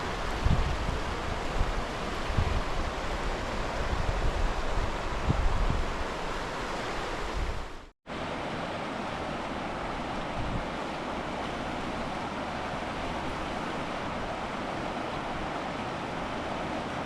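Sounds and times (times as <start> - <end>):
wind buffeting microphone: 0.0 - 6.5, 10.2 - 10.8
river water rushing: 0.0 - 17.0.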